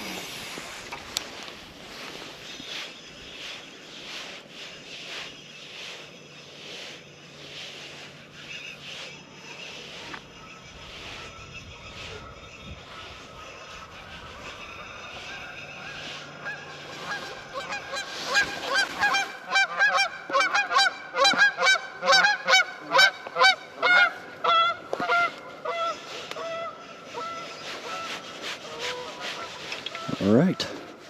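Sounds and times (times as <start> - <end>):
geese honking: 8.6 - 30.9.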